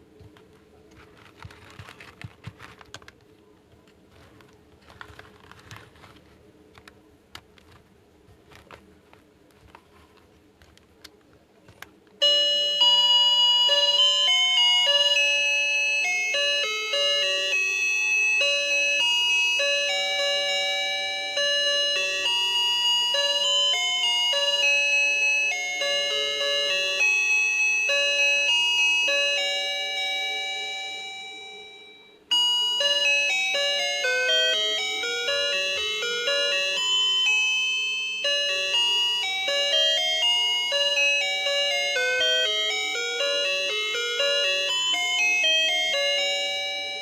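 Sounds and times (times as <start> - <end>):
plastic pieces clicking: 0.2 - 11.9.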